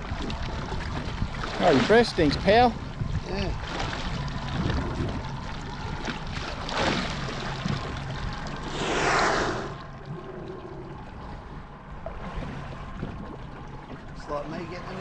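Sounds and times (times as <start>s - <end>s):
water washing: 0.0s - 15.0s
whale blowing: 8.6s - 11.7s.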